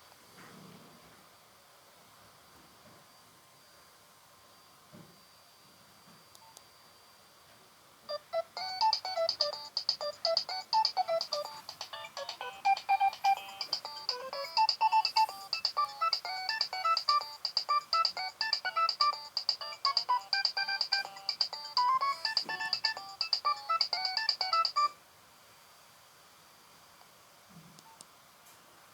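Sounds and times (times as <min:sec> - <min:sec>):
mobile phone ringtone melody: 0:08.1 - 0:25.0.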